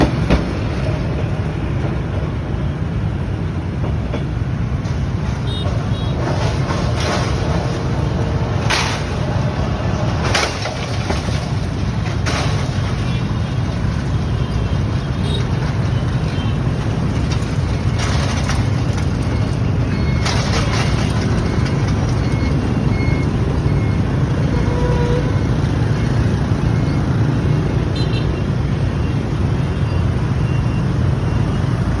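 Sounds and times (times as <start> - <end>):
street traffic rumble: 0.0 - 32.0.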